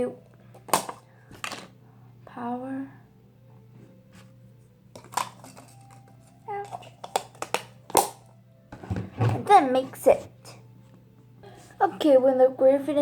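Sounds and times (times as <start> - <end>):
containers and utensils clicking: 4.9 - 8.3.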